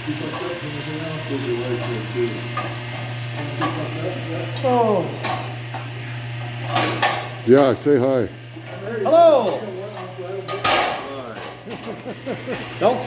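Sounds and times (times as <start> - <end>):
man saying oh: 4.6 - 5.2.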